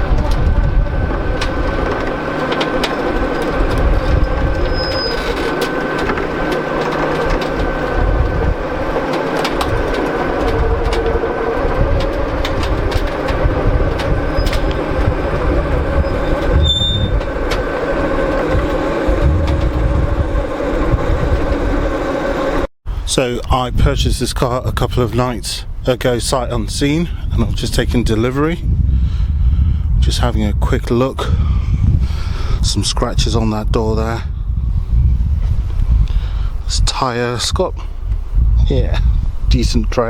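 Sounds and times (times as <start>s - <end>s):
clicks and rattles: 0.0s - 20.6s
heavy vehicle engine running: 0.0s - 22.7s.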